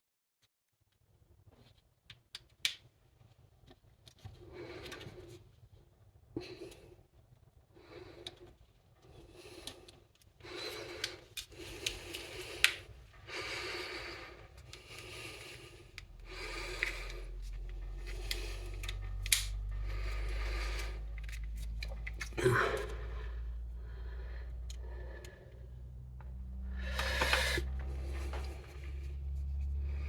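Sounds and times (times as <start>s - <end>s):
steady low hum: 9.2s - 30.0s.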